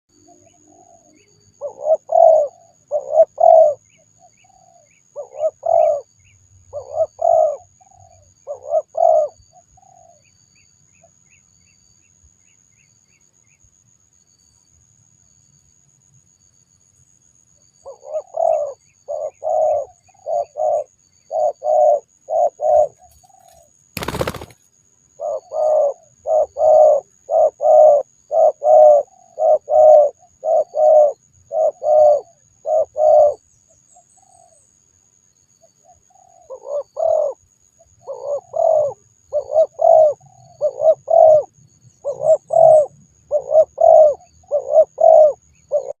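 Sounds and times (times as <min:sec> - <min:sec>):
dove cooing: 0:00.4 - 0:06.1, 0:06.7 - 0:10.2, 0:17.8 - 0:24.5, 0:25.2 - 0:33.4, 0:36.1 - 0:37.4, 0:38.0 - 0:46.0.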